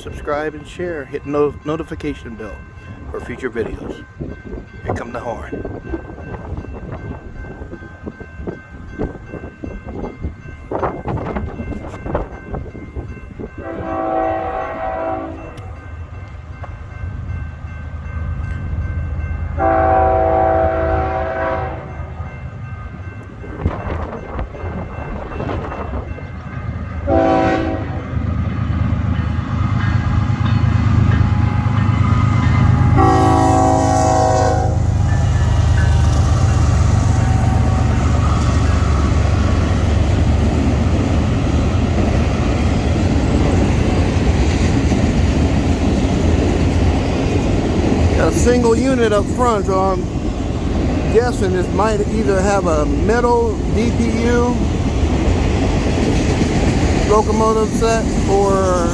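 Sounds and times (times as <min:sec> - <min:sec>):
diesel locomotive rumble: 0:00.0 - 0:58.9
locomotive air horn blasts: 0:13.6 - 0:15.7, 0:19.6 - 0:21.9, 0:27.1 - 0:28.1, 0:32.8 - 0:34.9.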